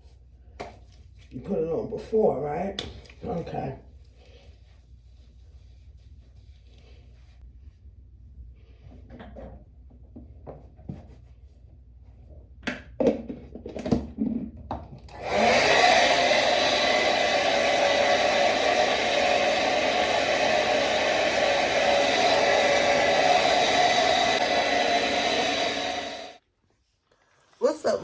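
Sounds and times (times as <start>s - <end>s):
hair dryer running: 15.1s - 26.4s.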